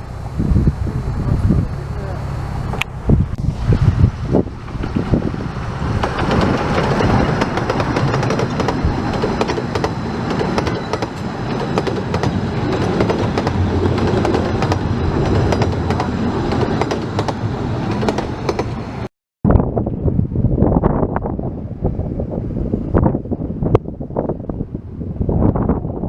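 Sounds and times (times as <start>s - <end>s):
train wheels clicking on rails: 0.0s - 19.1s
wind on microphone: 0.0s - 26.0s.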